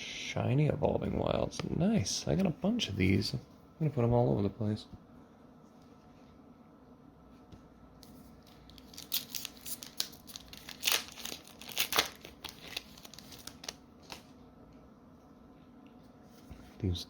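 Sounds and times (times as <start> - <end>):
foil wrapper tearing and crinkling: 8.5 - 14.3.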